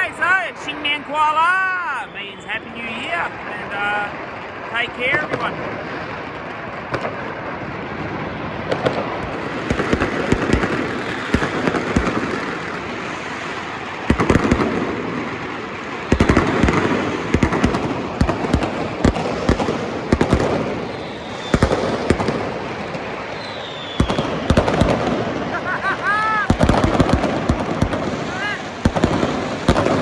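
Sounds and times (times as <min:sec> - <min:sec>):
fireworks bangs and crackle: 0:00.0 - 0:30.0
faint falling whistle: 0:23.4 - 0:24.2.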